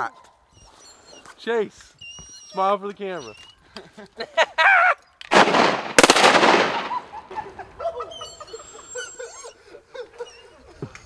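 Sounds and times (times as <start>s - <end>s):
shotgun blasts: 5.3s - 7.2s.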